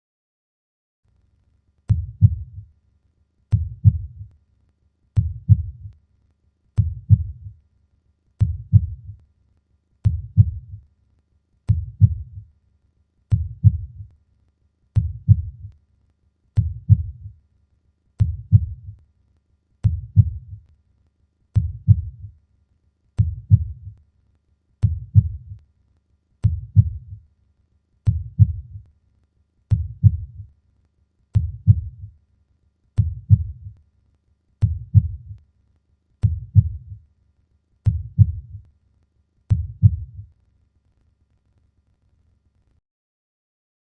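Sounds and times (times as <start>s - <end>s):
heartbeat thumps: 1.9s - 2.6s, 3.5s - 4.3s, 5.2s - 5.9s, 6.8s - 7.6s, 8.4s - 9.2s, 10.0s - 10.8s, 11.7s - 12.4s, 13.3s - 14.1s, 15.0s - 15.7s, 16.6s - 17.4s, 18.2s - 19.0s, 19.8s - 20.6s, 21.6s - 22.3s, 23.2s - 24.0s, 24.8s - 25.6s, 26.4s - 27.2s, 28.1s - 28.8s, 29.7s - 30.5s, 31.4s - 32.1s, 33.0s - 33.8s, 34.6s - 35.4s, 36.2s - 37.0s, 37.9s - 38.6s, 39.5s - 40.3s.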